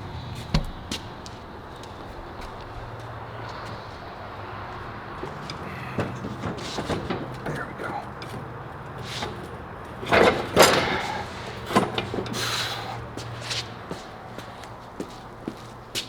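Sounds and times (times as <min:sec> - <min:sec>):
steady low hum: 0:00.0 - 0:05.2
knocks and clatter: 0:00.4 - 0:01.4.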